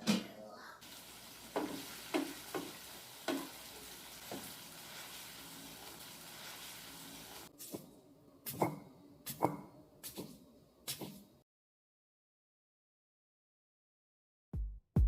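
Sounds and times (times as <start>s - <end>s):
food sizzling in a pan: 0.8s - 7.5s
utensil knocking against pan: 1.5s - 3.6s.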